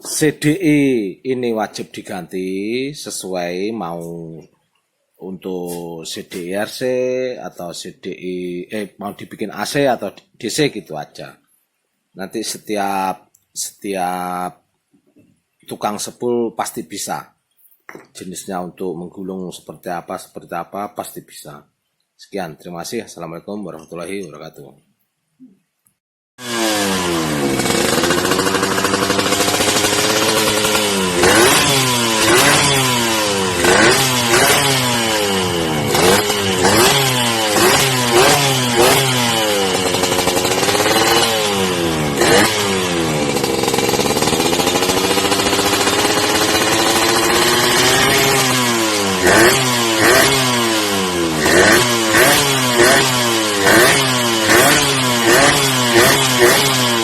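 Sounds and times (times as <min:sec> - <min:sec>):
motorcycle engine revving: 0:26.4 - 0:57.0.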